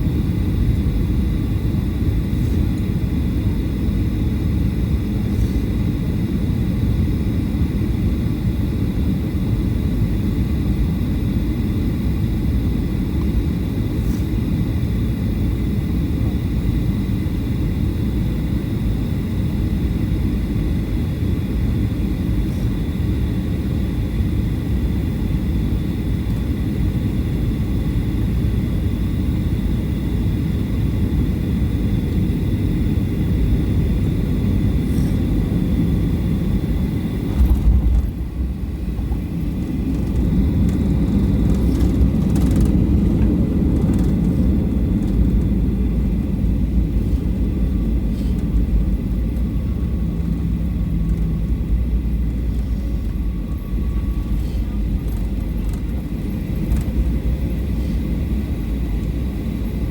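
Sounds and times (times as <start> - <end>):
jet engines and airflow: 0.0 - 59.9
wheels rumbling on runway: 33.9 - 58.9.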